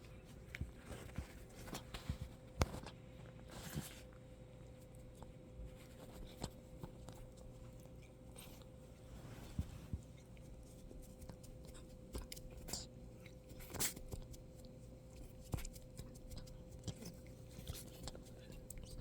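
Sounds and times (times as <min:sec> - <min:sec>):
nose rubbing and scuffling: 0:04.8 - 0:19.0.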